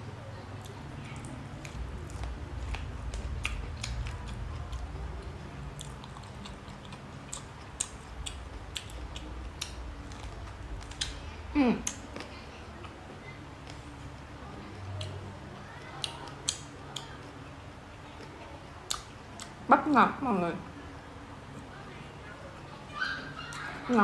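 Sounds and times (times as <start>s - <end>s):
low hum: 0.0s - 24.0s
person chewing food: 0.6s - 19.6s
wet mouth clicks: 16.0s - 17.2s, 18.9s - 19.6s.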